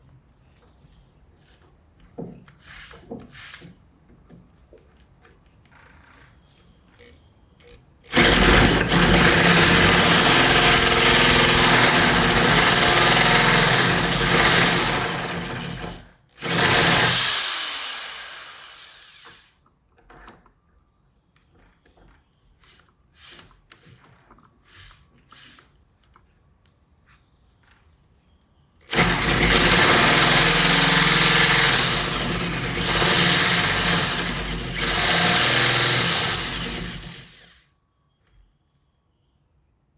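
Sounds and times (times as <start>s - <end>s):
electric drill boring into wood: 8.1s - 19.5s, 28.9s - 37.6s.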